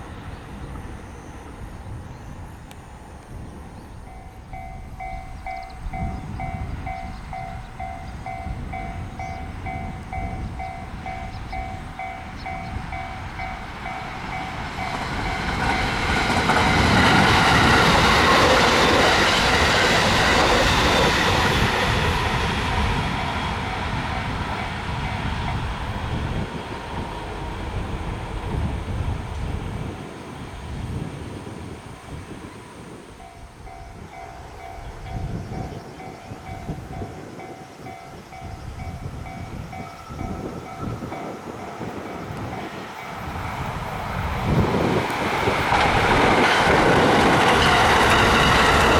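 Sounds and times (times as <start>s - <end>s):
train passing: 0.0s - 48.9s
level-crossing bell dinging: 3.9s - 26.0s.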